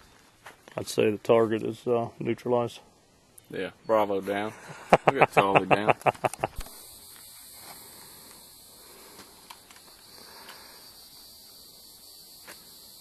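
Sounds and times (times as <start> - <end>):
high-pitched hiss: 0.0 - 13.0
faint clicks: 9.2 - 10.6.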